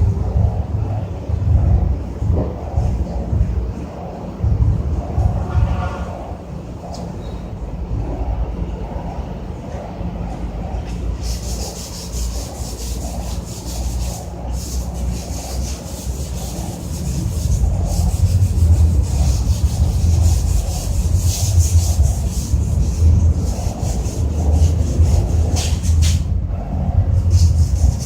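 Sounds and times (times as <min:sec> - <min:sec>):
low rumble: 0:00.0 - 0:28.0
scrubbing strokes on metal: 0:11.1 - 0:26.3.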